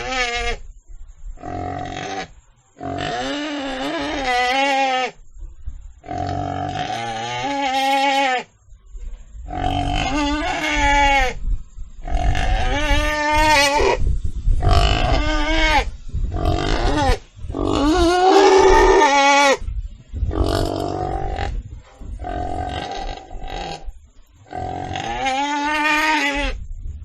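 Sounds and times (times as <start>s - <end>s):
pig squealing: 1.5s - 5.2s, 9.5s - 11.4s, 14.6s - 19.6s, 24.7s - 26.6s.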